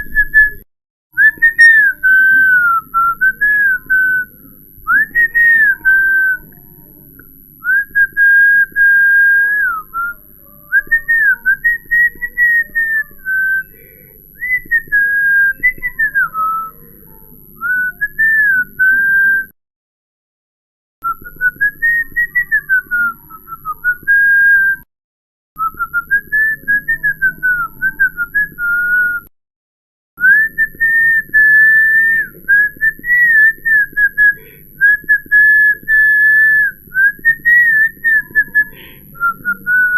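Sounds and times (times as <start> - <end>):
person whistling a melody: 1.2 - 4.3, 7.6 - 16.8, 17.6 - 19.6, 21.0 - 24.9, 25.6 - 29.3, 30.2 - 39.9.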